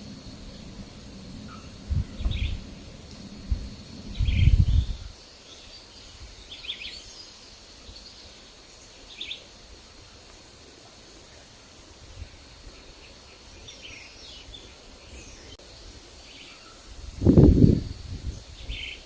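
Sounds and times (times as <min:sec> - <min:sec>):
wind rumble on microphone: 0:00.0 - 0:05.2, 0:16.9 - 0:19.0
insect drone: 0:00.0 - 0:19.0
small birds chirping: 0:00.0 - 0:19.0.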